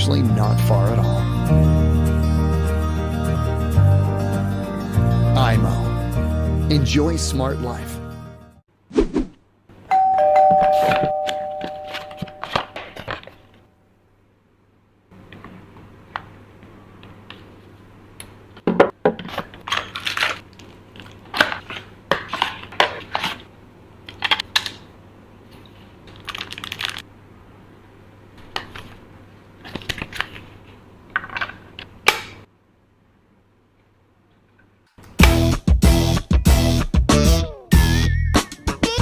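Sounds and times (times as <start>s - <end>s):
low steady hum: 9.7s - 18.4s.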